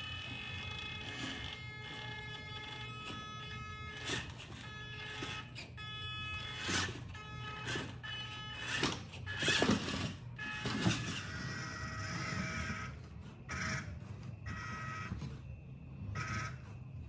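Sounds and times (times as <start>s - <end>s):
small electric motor whining: 0.0s - 17.0s.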